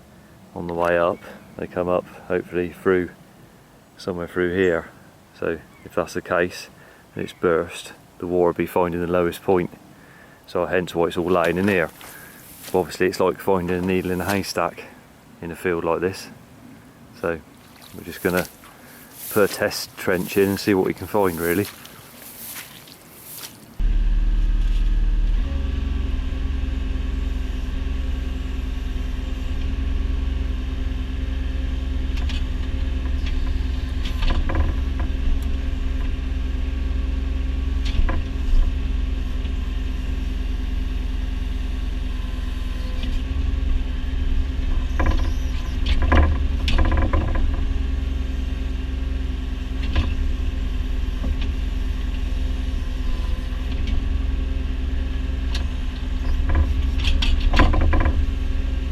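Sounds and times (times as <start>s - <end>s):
diesel engine humming: 8.6s - 58.9s
excavator digging knocks and clanks: 49.8s - 52.3s, 55.4s - 58.8s.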